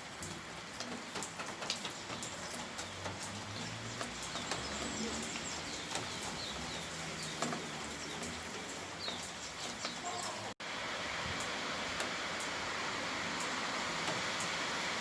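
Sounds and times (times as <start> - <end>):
steady rain falling: 0.0 - 15.0
individual drips: 0.2 - 10.5.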